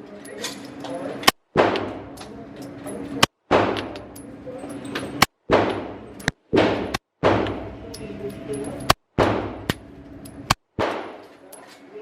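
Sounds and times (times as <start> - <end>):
gunshots with echo: 1.5 - 2.1, 3.5 - 4.0, 5.4 - 7.7, 10.8 - 11.2.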